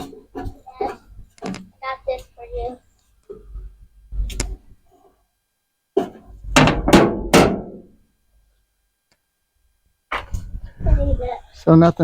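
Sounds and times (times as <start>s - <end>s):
hard knocks: 6.0s - 8.0s.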